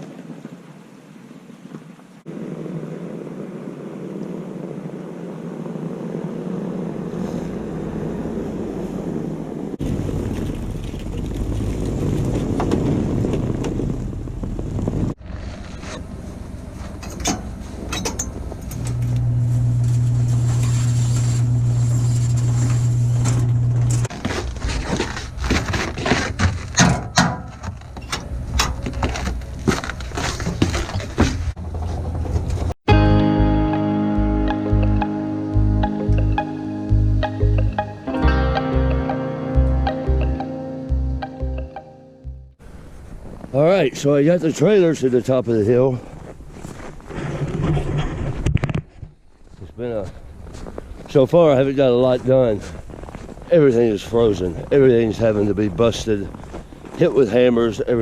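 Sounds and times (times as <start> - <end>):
knocks and scrapes on equipment: 24.0 - 32.7
vehicle engine running: 33.4 - 42.6.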